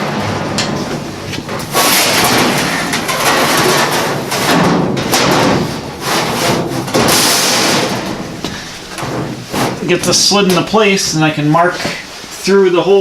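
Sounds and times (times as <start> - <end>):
knocks on steel: 0.1 - 9.8
steel scraping on steel: 0.6 - 4.5.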